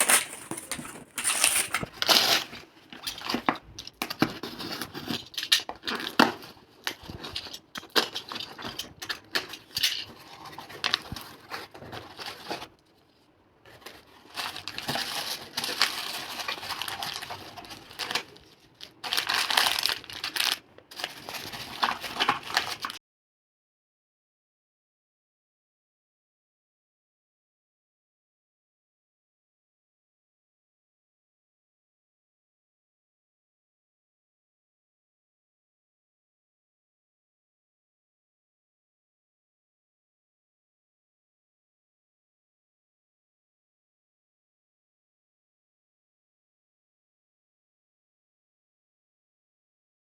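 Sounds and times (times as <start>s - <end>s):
paper and plastic rustling: 0.0s - 3.5s, 13.7s - 23.0s.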